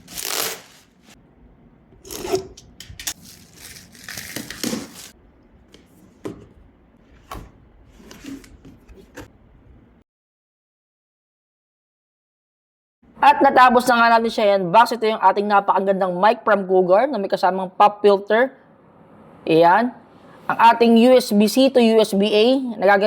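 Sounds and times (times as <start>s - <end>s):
packaging rustling and tearing: 0.0s - 1.2s, 2.0s - 5.2s.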